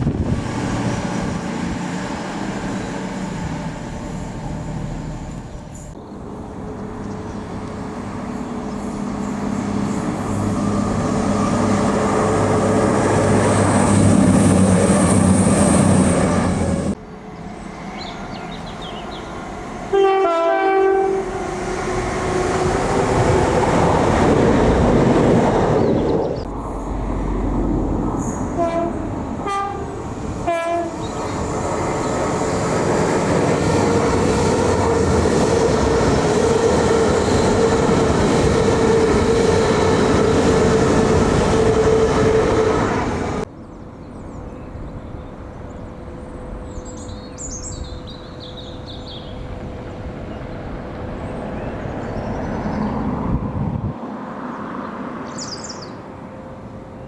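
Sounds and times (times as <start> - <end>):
train horn blasts: 19.9 - 21.6, 28.3 - 31.1.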